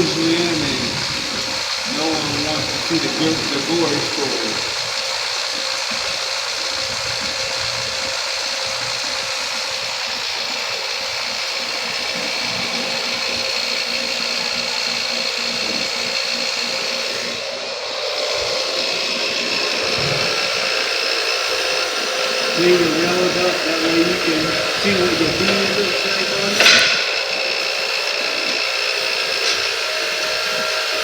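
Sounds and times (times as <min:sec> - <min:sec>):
wire wheel grinder scrubbing metal: 0:00.0 - 0:31.0.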